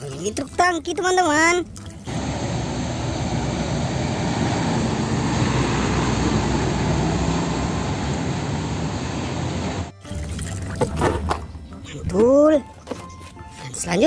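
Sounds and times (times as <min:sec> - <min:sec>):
low hum: 0:02.1 - 0:09.9
water sprayer rushing spray: 0:02.1 - 0:09.9.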